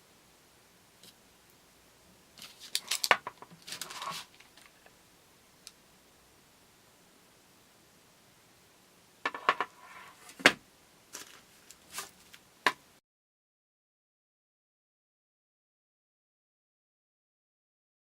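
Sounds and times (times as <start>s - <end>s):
kitchen tools clicking and scraping: 2.4s - 4.4s.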